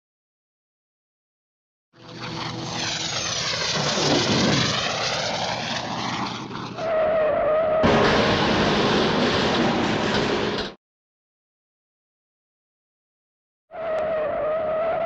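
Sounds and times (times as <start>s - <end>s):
loud engine-like rushing noise: 2.0s - 10.8s
wavering whistle-like tone: 6.8s - 8.0s, 13.7s - 15.0s.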